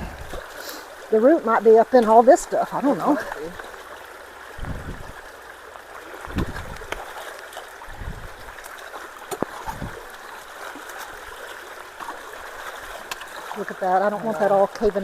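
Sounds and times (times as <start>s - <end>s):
water rushing through culvert: 0.0s - 15.0s.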